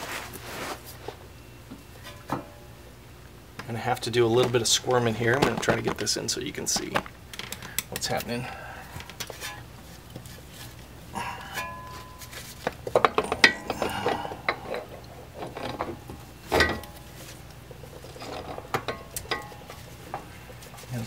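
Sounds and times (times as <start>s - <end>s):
metal clinks and knocks: 17.8s - 20.8s.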